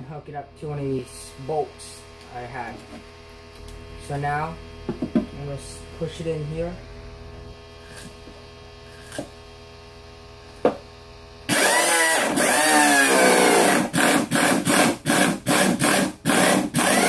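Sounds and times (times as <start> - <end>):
air impact wrench running: 11.5 - 17.0.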